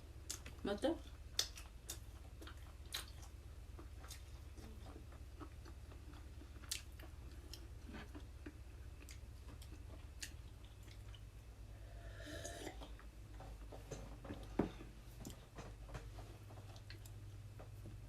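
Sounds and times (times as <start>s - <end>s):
chewing and mouth sounds: 0.2s - 11.3s.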